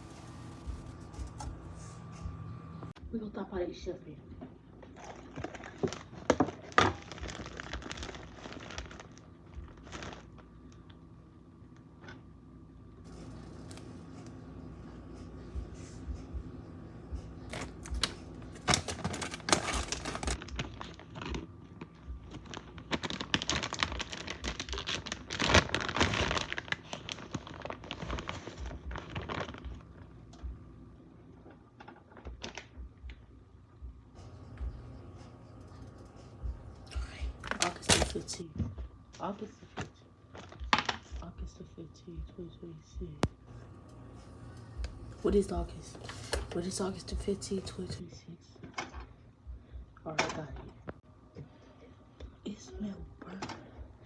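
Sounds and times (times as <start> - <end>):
food packaging crinkling: 0.0 - 1.9, 4.8 - 10.9, 17.5 - 29.7, 37.4 - 38.4, 43.6 - 48.0
faint steady hum: 0.0 - 54.0.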